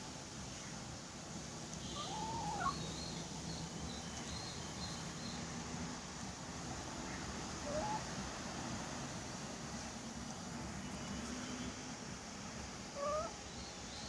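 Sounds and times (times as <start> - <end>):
chicken call: 1.9 - 2.8, 7.7 - 8.0, 13.0 - 13.3.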